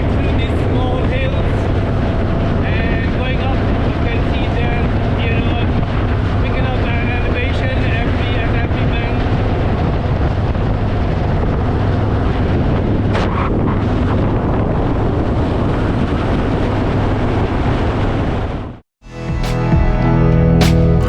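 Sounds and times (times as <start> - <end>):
wind on microphone: 0.0 - 18.8
low engine drone: 19.1 - 21.0.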